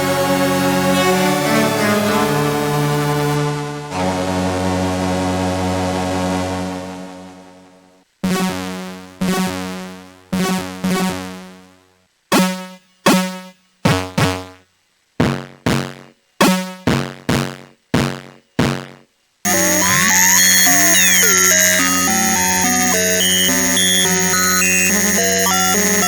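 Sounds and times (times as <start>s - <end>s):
held synth chord: 0.0s - 7.9s, 19.5s - 26.0s
busier synth sound: 0.6s - 7.5s, 19.5s - 26.0s
plucked synth notes: 19.5s - 26.0s.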